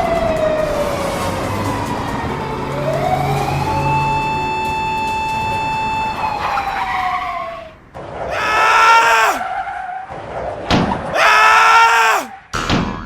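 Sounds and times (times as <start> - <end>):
loud cry: 8.3 - 9.5, 11.1 - 12.4.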